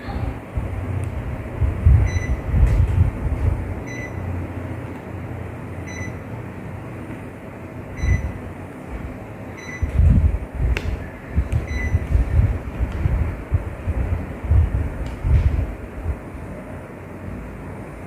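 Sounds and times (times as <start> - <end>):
air conditioner fan blowing: 0.0 - 18.0
wind buffeting microphone: 0.1 - 3.8, 9.8 - 16.5.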